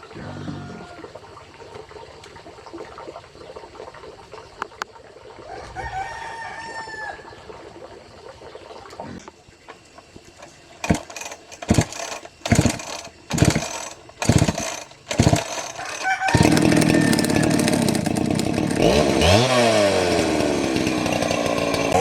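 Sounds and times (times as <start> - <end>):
rooster crowing: 0.4 - 1.0, 5.5 - 7.4, 15.4 - 18.0.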